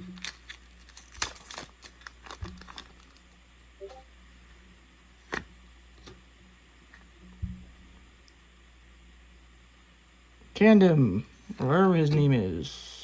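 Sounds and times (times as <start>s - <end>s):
foil pack tearing and crinkling: 0.0s - 3.4s.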